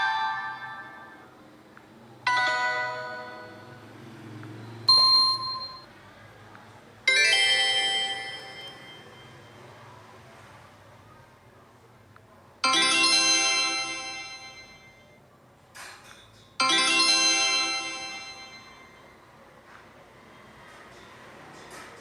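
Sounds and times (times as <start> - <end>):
doorbell-like ringtone chimes: 0.0 - 1.3, 2.3 - 4.0, 4.9 - 5.9, 7.1 - 9.7, 12.6 - 15.2, 16.6 - 19.2.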